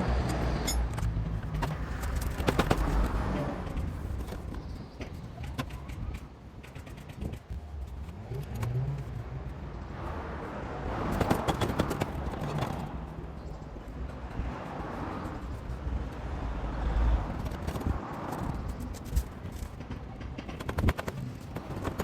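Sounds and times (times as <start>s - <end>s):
hand tools clicking on metal: 0.1s - 2.8s.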